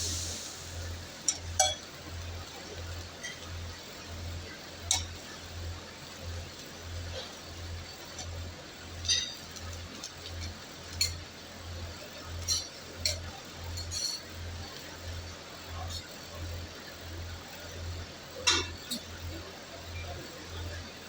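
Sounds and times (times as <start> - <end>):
metal utensils clinking on griddle: 1.2 - 1.9, 3.1 - 3.6, 4.8 - 5.3, 8.1 - 11.3, 12.2 - 14.4, 18.4 - 19.1.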